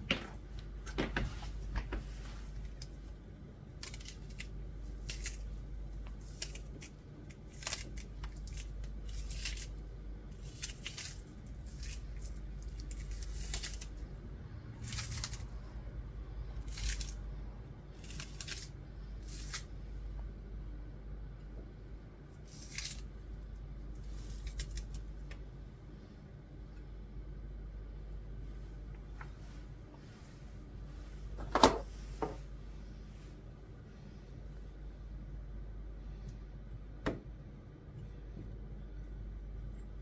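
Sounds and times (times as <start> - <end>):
hand rustles and scrapes: 0.0 - 3.2, 28.4 - 34.2
low steady hum: 0.0 - 40.0.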